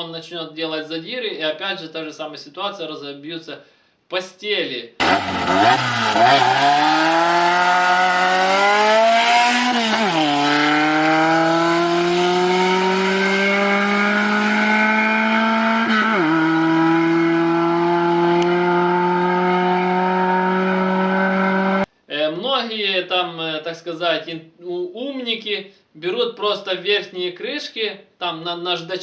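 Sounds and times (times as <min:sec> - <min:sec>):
car engine accelerating: 0:05.0 - 0:21.9.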